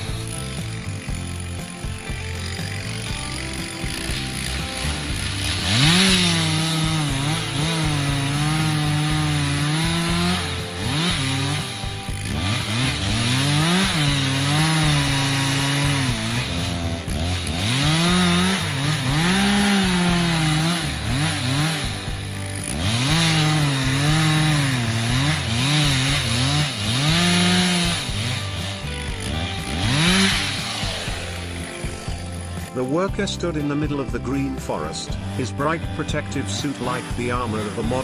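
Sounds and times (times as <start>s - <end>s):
chainsaw cutting wood: 0.0s - 38.0s.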